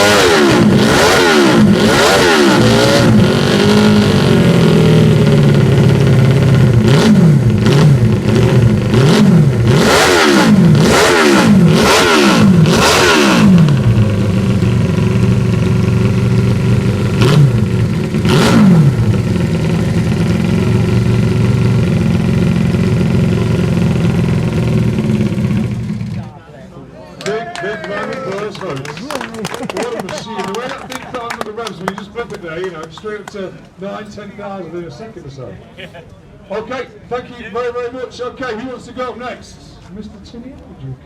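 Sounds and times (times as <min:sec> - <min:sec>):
motorcycle engine revving and idling: 0:00.0 - 0:26.4.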